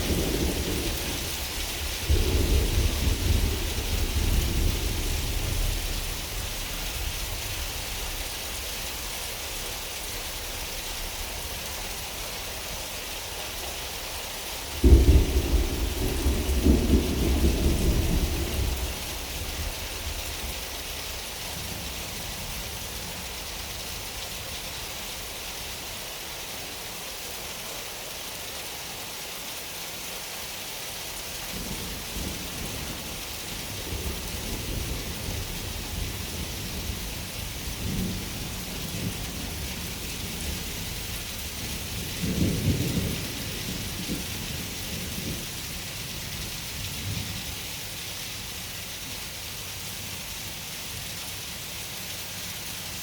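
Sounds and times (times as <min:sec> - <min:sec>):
thunder clap rolling: 0:00.0 - 0:06.0, 0:14.8 - 0:19.8
faint thunder rumble: 0:00.0 - 0:08.6, 0:14.6 - 0:22.6, 0:31.6 - 0:47.6
rain hissing: 0:00.0 - 0:53.0.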